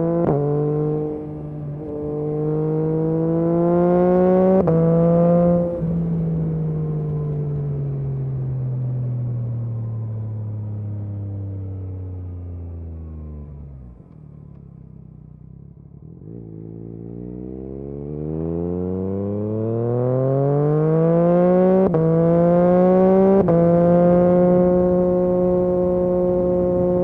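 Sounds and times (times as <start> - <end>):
motorcycle engine revving: 0.0 - 6.2, 15.4 - 27.0.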